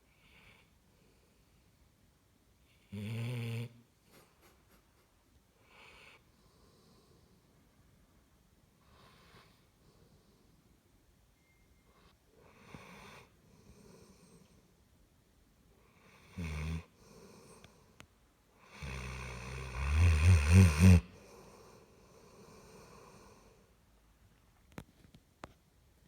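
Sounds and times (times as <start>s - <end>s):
dog snoring: 2.8s - 3.8s, 15.9s - 17.6s, 18.6s - 21.7s.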